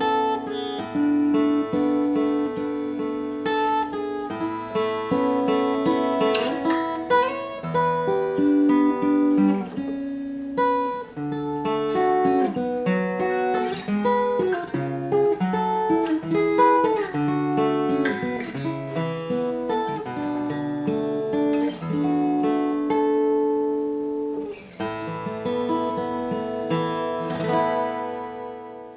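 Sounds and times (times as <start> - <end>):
acoustic guitar picked melody: 0.0 - 28.9.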